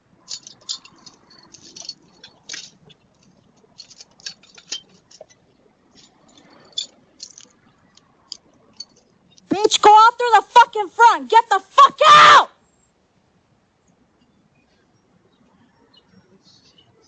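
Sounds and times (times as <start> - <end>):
rustles: 0.0 - 10.0.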